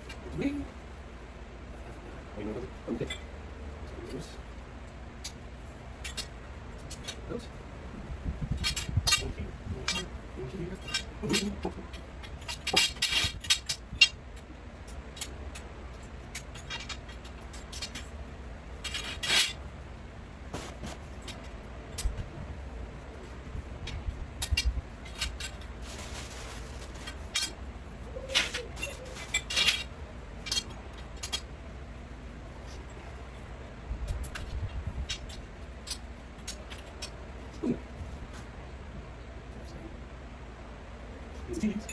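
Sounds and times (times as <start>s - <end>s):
metal poles clinking and rattling: 28.3s - 31.4s.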